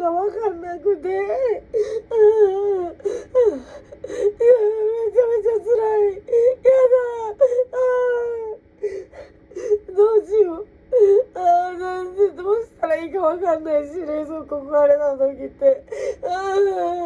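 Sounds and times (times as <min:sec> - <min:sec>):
woman wailing and sobbing: 0:00.0 - 0:12.7, 0:13.3 - 0:17.0.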